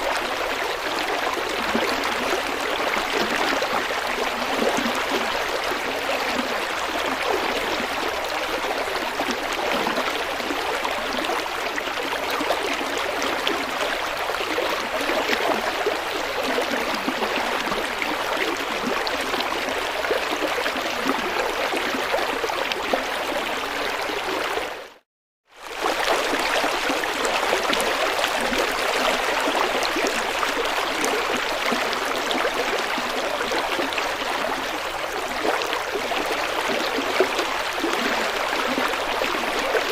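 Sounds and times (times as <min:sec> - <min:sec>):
river water flowing over rocks: 0:25.6 - 0:39.9.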